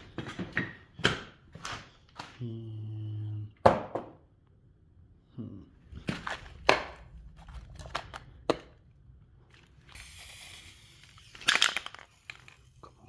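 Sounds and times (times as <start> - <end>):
paint spitting and sputtering: 9.5 - 13.0
hiss of air: 9.9 - 12.8.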